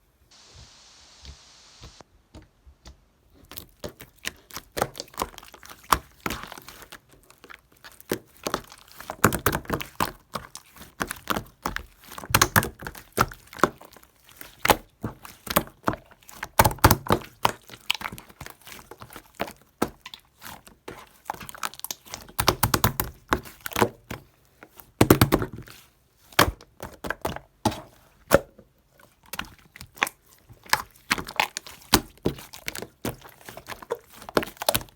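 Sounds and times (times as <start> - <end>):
faint hiss: 0.2 - 2.0.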